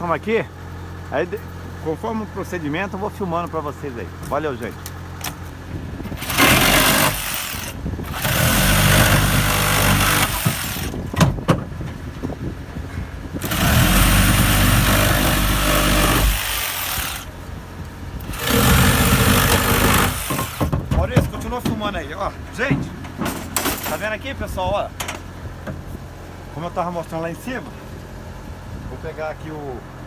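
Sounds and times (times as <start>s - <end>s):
powered machinery hissing: 6.0s - 11.2s, 13.3s - 20.9s.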